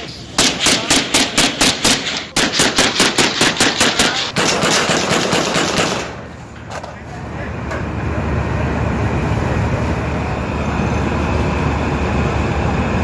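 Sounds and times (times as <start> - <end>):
machine-gun fire: 0.4 - 6.2.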